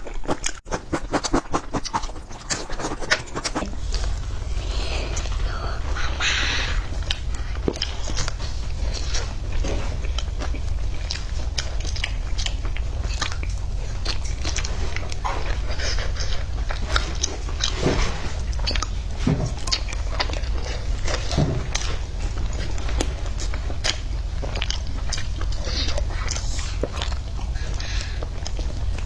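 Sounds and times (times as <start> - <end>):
person chewing crispy food: 0.0 - 4.1.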